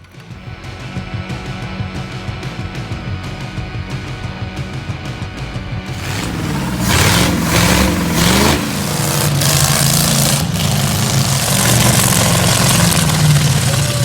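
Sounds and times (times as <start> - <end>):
engine revving: 4.1 - 14.0.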